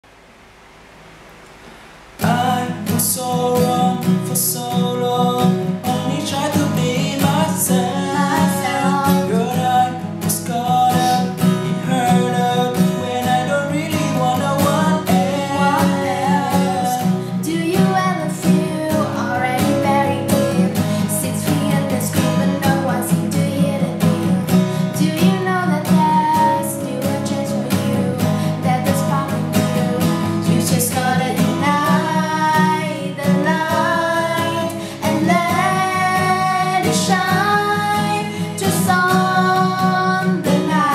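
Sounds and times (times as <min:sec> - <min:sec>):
acoustic guitar strumming: 0:01.4 - 0:40.9
person singing: 0:02.2 - 0:40.9.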